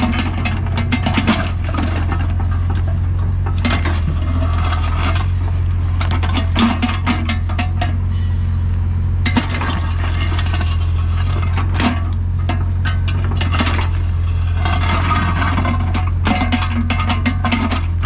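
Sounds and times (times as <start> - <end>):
metallic clanks and rattles: 0.0 - 8.1, 9.2 - 18.0
excavator diesel engine running: 0.0 - 18.0.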